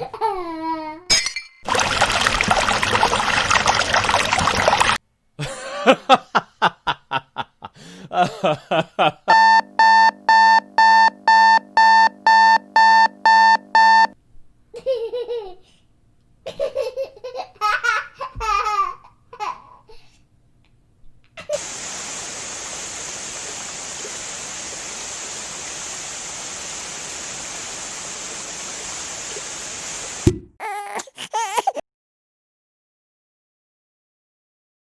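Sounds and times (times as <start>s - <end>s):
electronic beeps: 9.3s - 14.2s
baby laughing: 14.8s - 15.6s, 16.5s - 19.7s, 30.6s - 31.8s
steady hiss: 21.5s - 30.2s.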